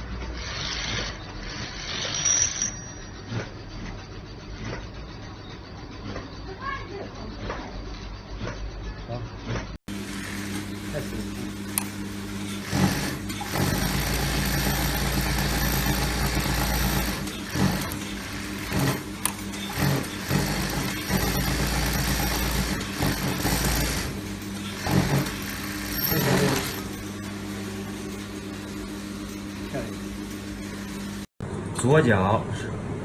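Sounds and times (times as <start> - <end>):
steady machine hum: 2.8 - 33.0
linking machine running in bursts: 9.9 - 31.3.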